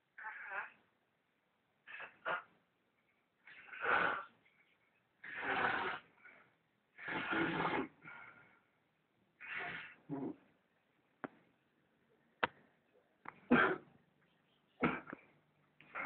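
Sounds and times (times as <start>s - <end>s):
loud snoring: 5.2s - 6.1s, 7.0s - 8.0s.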